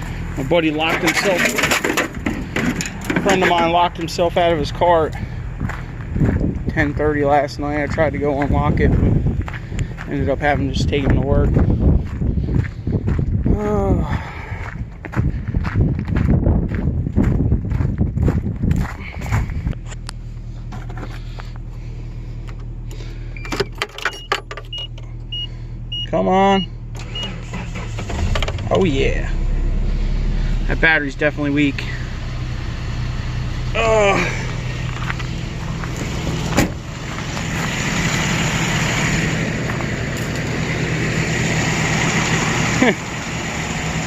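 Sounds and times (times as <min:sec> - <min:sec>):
pickup engine humming: 0:00.0 - 0:44.0
clicks and rattles: 0:00.9 - 0:03.6
vehicle warning chime: 0:23.4 - 0:27.4.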